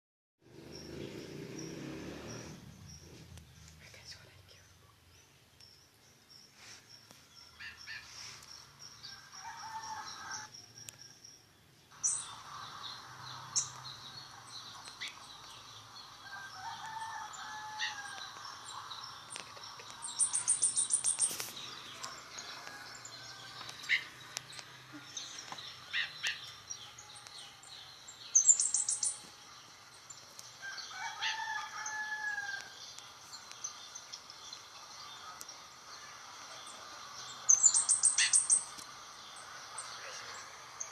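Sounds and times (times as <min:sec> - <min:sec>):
other birds calling: 0:06.5 - 0:11.0, 0:11.9 - 0:40.9
bird chirping high: 0:11.9 - 0:40.9
high-pitched bird trill: 0:16.3 - 0:21.4, 0:25.8 - 0:29.3, 0:37.5 - 0:38.7.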